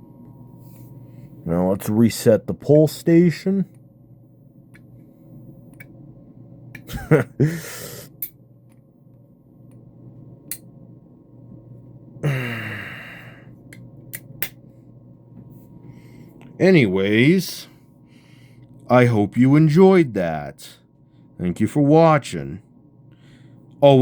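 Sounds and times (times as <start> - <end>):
man grunting: 12.2 - 13.4
falling sigh: 12.2 - 13.5
breathy exhale: 12.2 - 13.6, 18.0 - 18.7.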